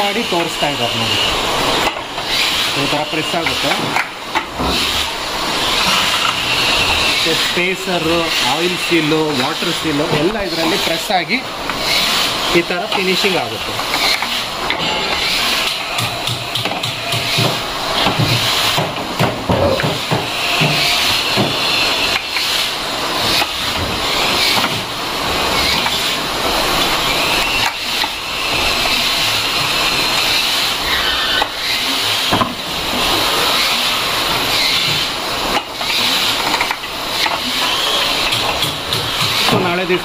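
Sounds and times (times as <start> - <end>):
machinery hiss: 0.0 - 40.0
metal parts knocking and clanking: 13.8 - 22.5, 34.7 - 39.8.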